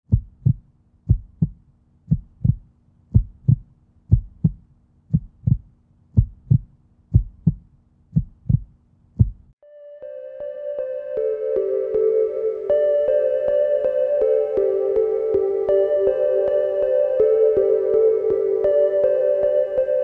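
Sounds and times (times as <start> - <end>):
heartbeat thumps: 0.1 - 9.6.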